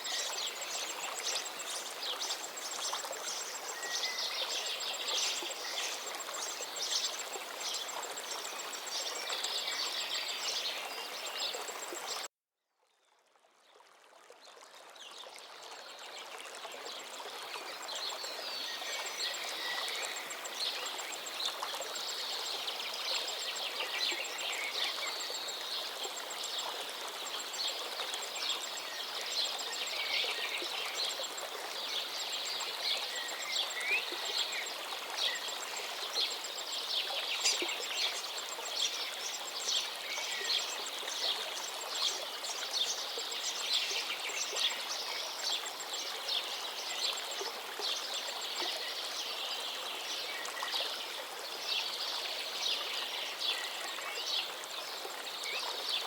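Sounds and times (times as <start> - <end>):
river flowing: 0.0 - 12.3, 13.7 - 56.0
songbirds singing: 0.0 - 12.3.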